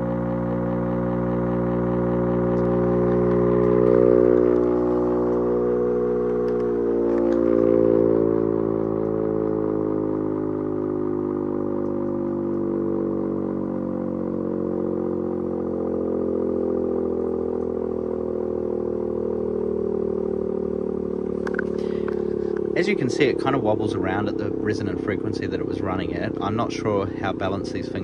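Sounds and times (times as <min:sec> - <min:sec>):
air raid siren wailing: 0:00.0 - 0:28.0.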